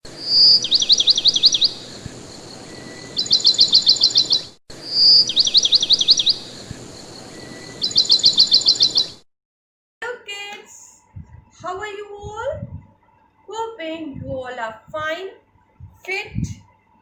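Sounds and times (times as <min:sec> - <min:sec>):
bird chirping: 0:00.2 - 0:09.2, 0:11.1 - 0:12.9.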